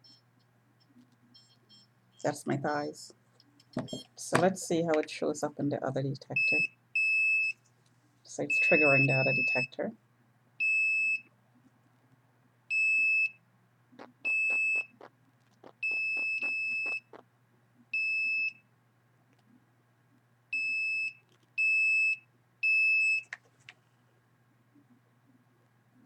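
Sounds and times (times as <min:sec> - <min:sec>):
faint low hum: 0:00.0 - 0:26.0
signal detector beeping: 0:08.5 - 0:09.7, 0:14.3 - 0:15.0, 0:15.8 - 0:17.1.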